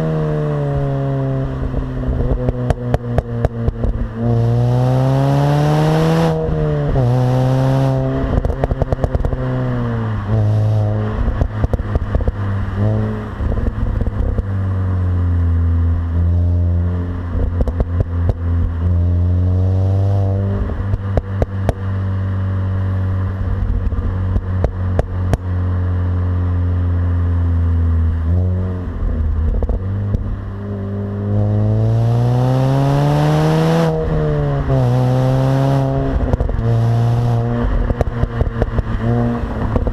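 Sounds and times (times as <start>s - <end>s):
car engine accelerating: 0.0s - 39.9s
exhaust crackles and pops: 1.6s - 4.4s, 8.0s - 14.8s, 15.5s - 19.3s, 20.2s - 22.0s, 22.7s - 27.0s, 27.7s - 30.9s, 35.8s - 39.9s.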